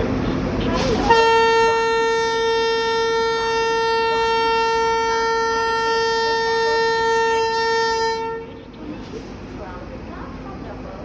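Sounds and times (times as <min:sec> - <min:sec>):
locomotive horn blast: 0:00.7 - 0:08.7.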